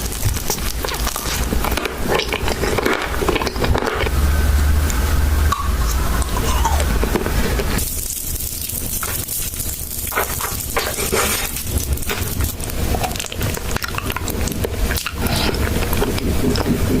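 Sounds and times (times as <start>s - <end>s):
cat chewing food: 0.0s - 4.1s, 7.0s - 17.0s
low rumble: 3.6s - 9.0s.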